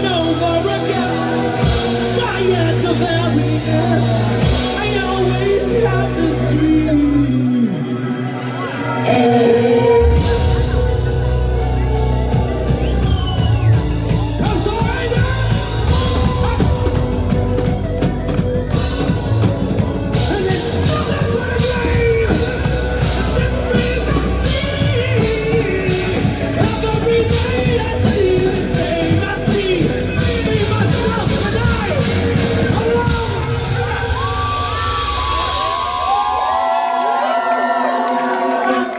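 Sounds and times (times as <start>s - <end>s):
person singing: 0.0s - 13.0s, 13.7s - 34.2s
live rock band playing: 0.0s - 36.2s
drum hits: 10.3s - 36.3s.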